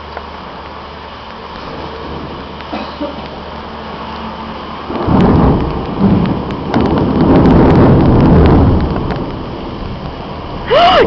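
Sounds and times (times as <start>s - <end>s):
steady rain: 0.0s - 11.0s
thunder rumbling: 1.5s - 11.0s.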